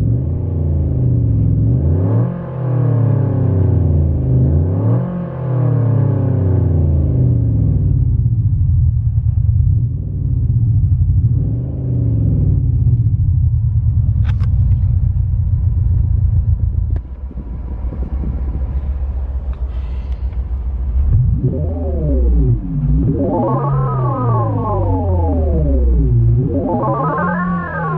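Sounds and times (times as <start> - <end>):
deep rumbling engine: 0.0 - 27.9
sharp click: 14.2 - 14.9.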